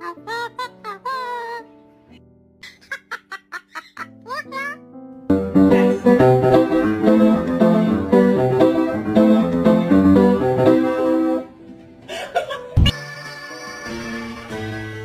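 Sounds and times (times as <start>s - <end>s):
plucked guitar melody: 4.4s - 11.4s.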